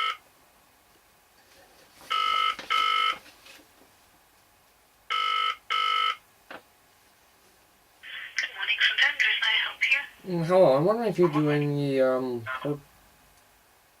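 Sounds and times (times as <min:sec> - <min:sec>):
telephone ringback tone: 0:00.0 - 0:00.2, 0:02.1 - 0:03.2, 0:05.1 - 0:06.2.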